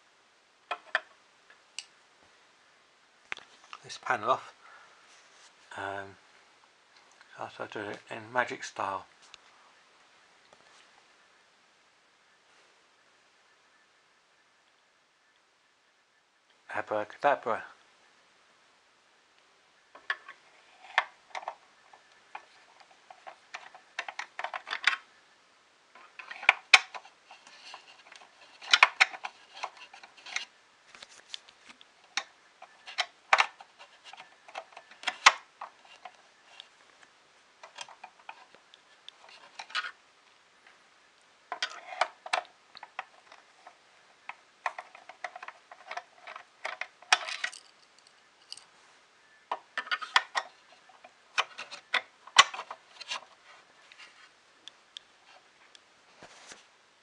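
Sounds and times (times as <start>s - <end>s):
screwdriver and parts clattering: 44.7s - 48.7s.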